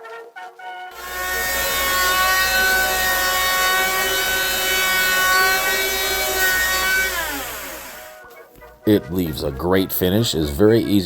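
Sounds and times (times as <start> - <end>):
cordless planer planing wood: 1.0 - 8.2.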